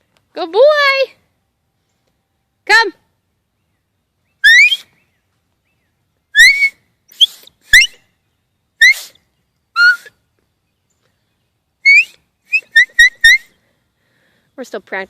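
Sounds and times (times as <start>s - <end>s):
dog whistle toots: 4.4s - 4.9s, 6.4s - 8.0s, 8.8s - 9.1s, 9.8s - 10.1s, 11.8s - 13.5s.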